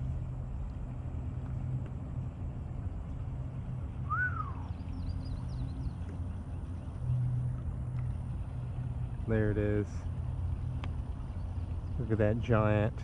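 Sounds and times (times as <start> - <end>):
steady low hum: 0.0 - 13.0
arching bird call: 4.0 - 5.6.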